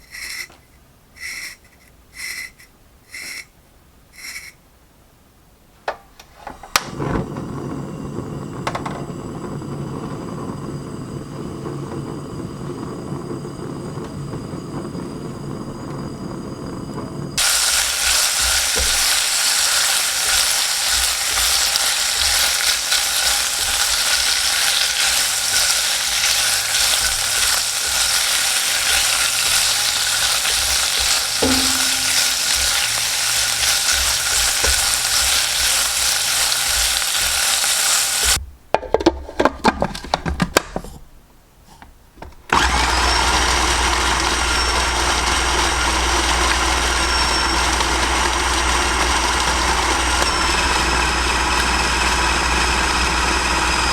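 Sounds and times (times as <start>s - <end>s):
kitchen blender whirring: 17.3s - 38.4s, 42.5s - 53.9s
meat sizzling in a pan: 17.3s - 38.4s.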